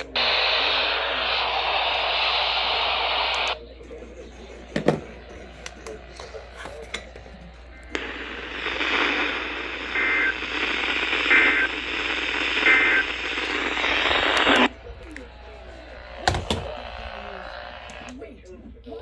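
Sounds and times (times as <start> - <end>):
radio static hiss: 0.0 - 19.0.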